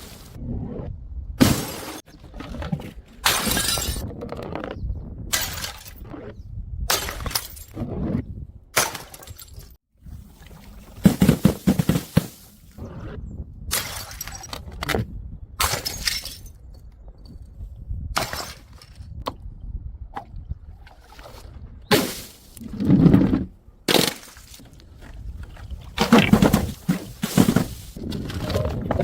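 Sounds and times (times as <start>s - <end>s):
glass bottles smashing: 3.2s - 4.0s.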